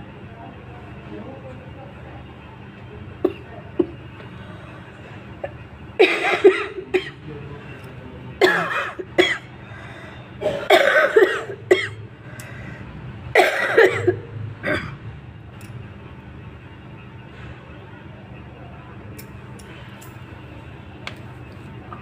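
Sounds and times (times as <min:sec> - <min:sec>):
woman coughing: 0:03.2 - 0:04.0, 0:05.4 - 0:07.2, 0:08.4 - 0:09.5, 0:10.4 - 0:12.0, 0:13.4 - 0:15.0.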